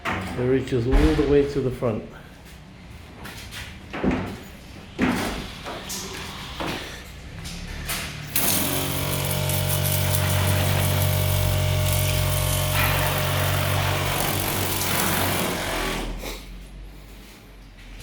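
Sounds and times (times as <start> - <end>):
electric water pump humming: 8.3 - 16.2.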